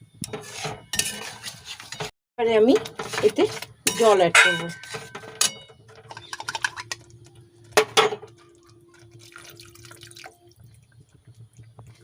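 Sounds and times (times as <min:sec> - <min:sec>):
sharp metallic clanks: 0:03.9 - 0:06.7
water pouring and splashing: 0:08.2 - 0:12.0.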